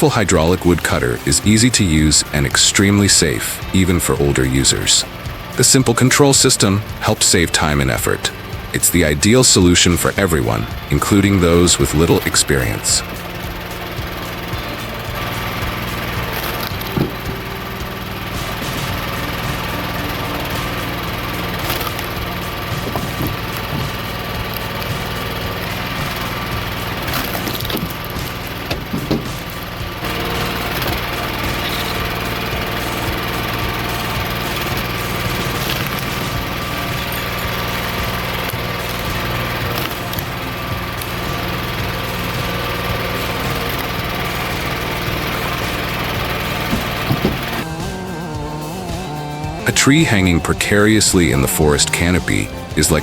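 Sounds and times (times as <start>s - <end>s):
engine running: 0.0s - 53.0s
sharp knocks: 28.7s - 29.5s, 46.7s - 47.9s.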